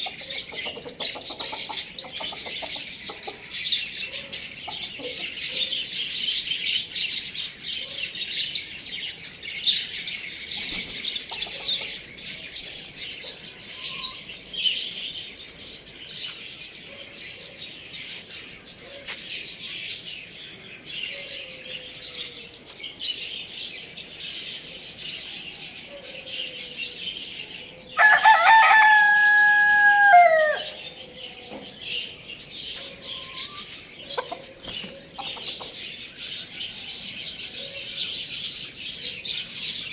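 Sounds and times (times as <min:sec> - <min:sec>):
small birds chirping: 0:00.0 - 0:39.9
rooster crowing: 0:28.0 - 0:30.8.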